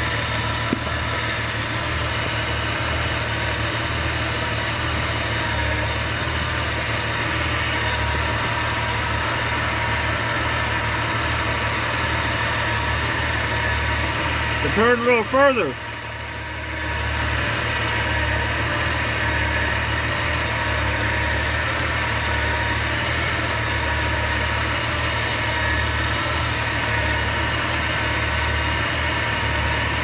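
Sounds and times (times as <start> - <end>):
car engine idling: 0.0 - 22.2.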